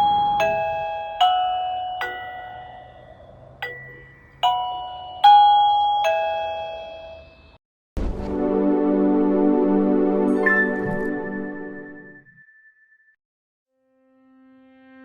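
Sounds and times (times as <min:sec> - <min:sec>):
doorbell chime ringtone: 0:00.0 - 0:07.6.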